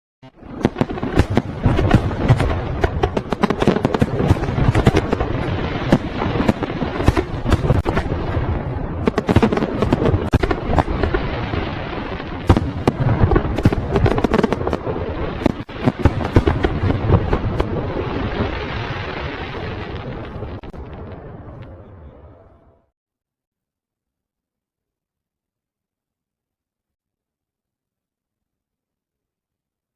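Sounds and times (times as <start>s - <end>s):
fireworks bangs and crackles: 0.3s - 22.4s.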